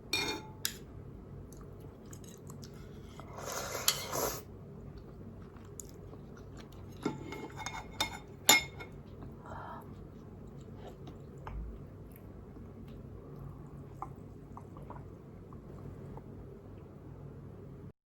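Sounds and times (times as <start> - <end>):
utensils clinking against bowl: 0.2 - 0.8, 7.0 - 9.0.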